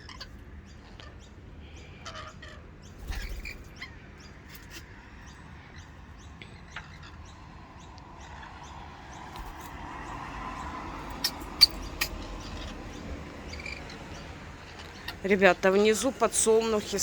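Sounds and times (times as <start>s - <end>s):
lorikeets chirping and squeaking: 0.0s - 17.0s.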